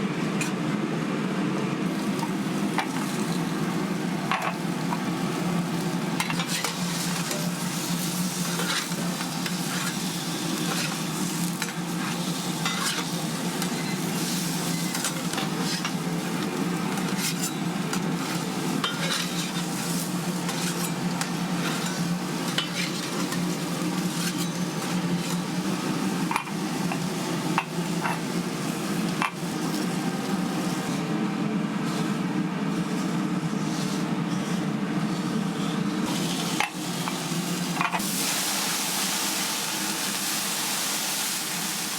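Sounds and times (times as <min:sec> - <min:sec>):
food sizzling on griddle: 0:01.9 - 0:31.0, 0:36.0 - 0:41.9
metal utensils clicking and scraping: 0:06.2 - 0:25.5.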